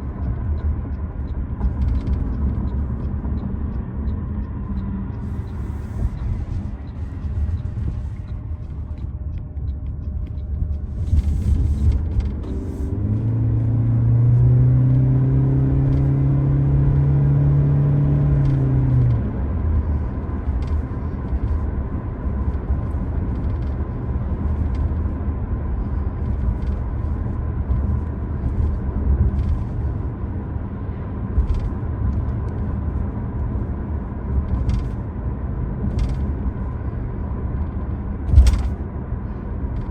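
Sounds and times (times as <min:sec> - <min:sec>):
car engine humming: 0:00.0 - 0:39.9
road rumble: 0:00.0 - 0:39.9.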